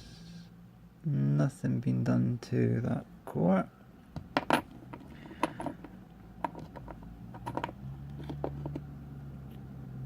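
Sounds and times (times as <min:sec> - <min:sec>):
low steady hum: 0:00.0 - 0:10.0
small metal parts clicking: 0:04.4 - 0:08.9.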